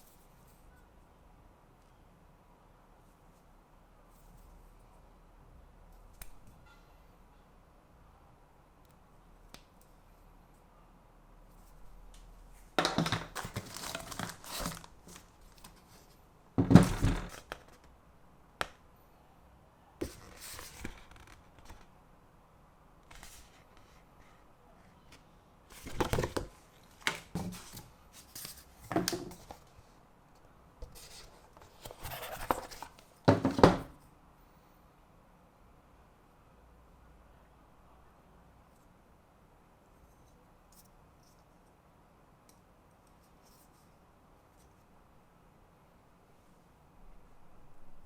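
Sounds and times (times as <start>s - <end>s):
packaging crinkling and tearing: 13.0s - 15.8s.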